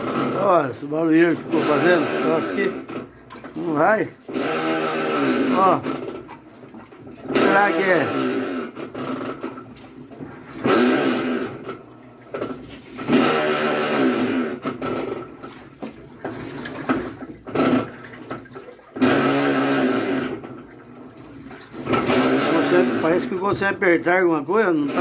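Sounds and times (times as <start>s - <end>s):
creaking scraping noise: 0.0s - 6.2s, 21.8s - 23.8s
washing machine agitating: 0.0s - 25.0s
water churning: 0.0s - 25.0s.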